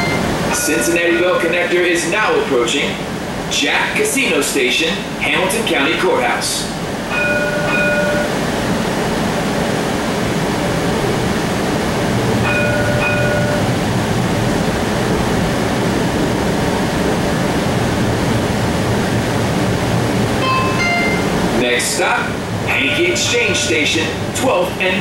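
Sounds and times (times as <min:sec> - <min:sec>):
high tones: 0:00.0 - 0:00.9, 0:20.4 - 0:21.6, 0:22.7 - 0:24.1
streetcar interior rumble and hiss: 0:00.0 - 0:25.0.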